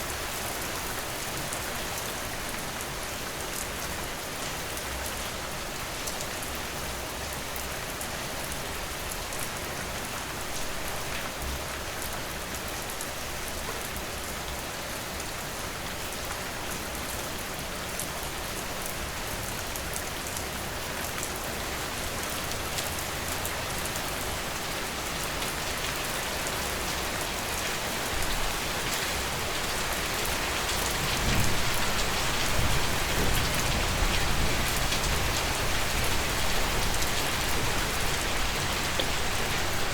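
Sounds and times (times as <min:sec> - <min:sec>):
rain falling: 0:00.0 - 0:39.9.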